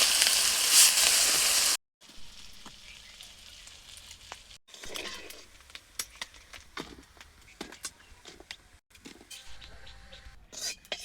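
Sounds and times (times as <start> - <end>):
food sizzling in hot oil: 0.0 - 6.5.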